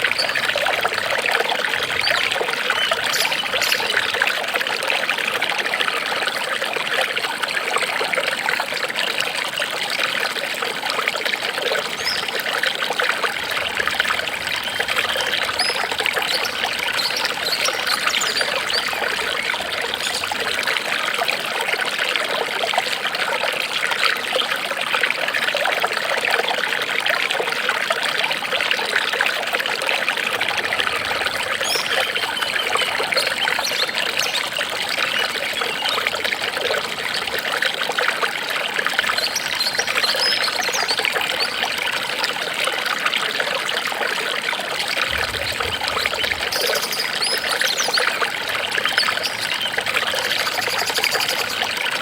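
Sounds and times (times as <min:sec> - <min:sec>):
water trickling: 0:00.0 - 0:52.0.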